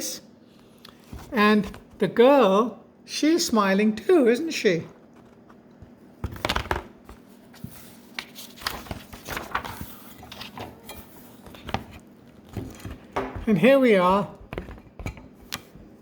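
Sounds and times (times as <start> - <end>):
paper rustling: 4.9 - 13.1
page turning: 6.4 - 12.5.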